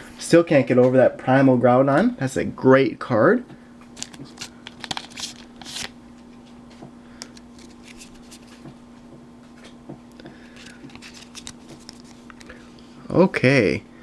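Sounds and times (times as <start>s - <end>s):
trading cards rustling: 3.8s - 8.8s, 9.6s - 12.8s.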